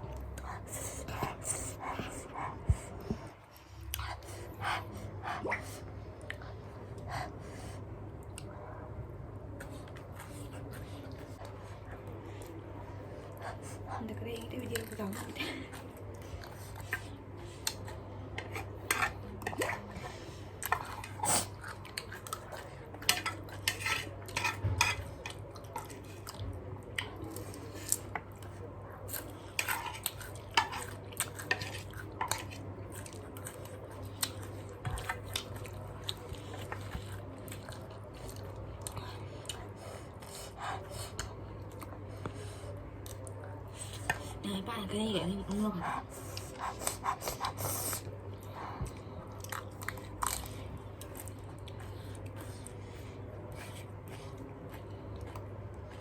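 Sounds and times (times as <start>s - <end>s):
cabbage crunching while chewed: 20.6s - 42.0s, 46.2s - 56.0s.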